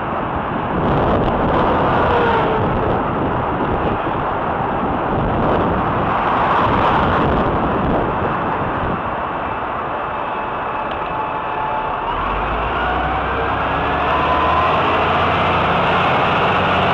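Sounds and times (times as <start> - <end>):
car traffic on road: 0.0 - 16.9
wind rushing over microphone: 0.0 - 16.9.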